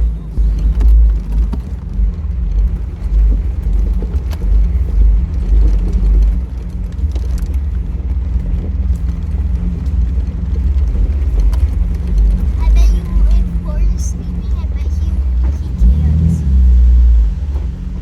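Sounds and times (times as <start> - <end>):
clicks and knocks from bumpy ground: 0.0 - 13.9
engine and drivetrain rumble: 0.0 - 18.0.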